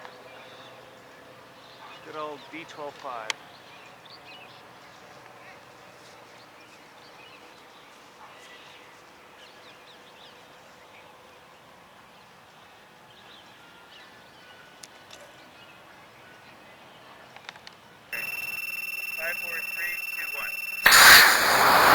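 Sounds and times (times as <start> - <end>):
bird chirps: 18.2 - 21.9
sharp click: 18.2 - 21.9.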